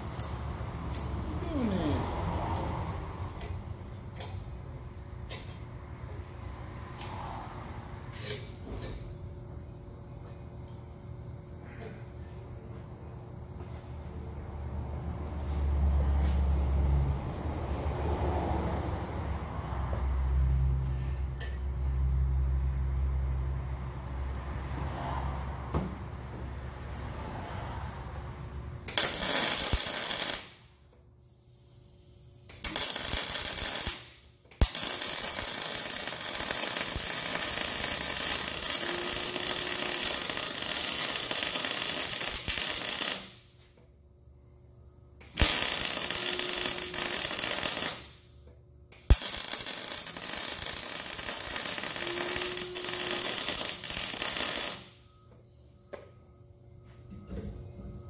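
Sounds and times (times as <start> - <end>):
electric arc welding crackling: 28.9 - 30.6, 32.5 - 43.5, 45.2 - 48.2, 49.0 - 55.0.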